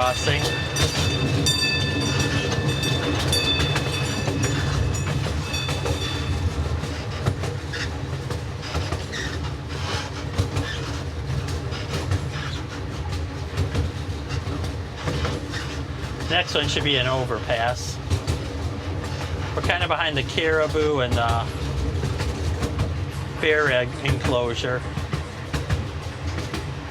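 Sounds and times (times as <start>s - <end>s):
railroad crossing bell ringing: 0.0s - 7.2s
miniature train rumbling on track: 0.0s - 26.9s
wheels clacking over rail joints: 0.0s - 26.9s.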